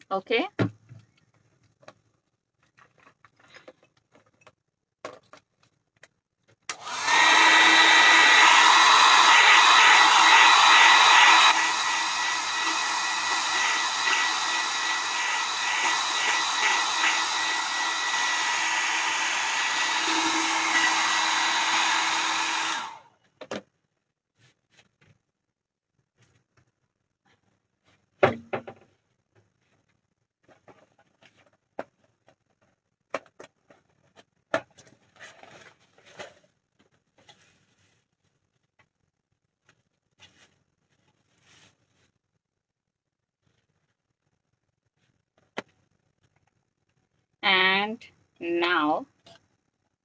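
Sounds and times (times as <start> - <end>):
hot-air dryer blowing: 6.7 - 23.0, 48.4 - 49.0.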